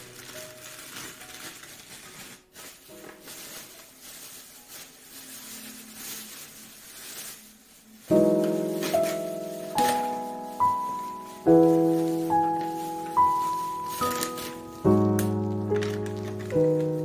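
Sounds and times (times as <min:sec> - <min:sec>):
soft piano notes: 0:00.0 - 0:17.0
wood fire crackling: 0:00.0 - 0:17.0.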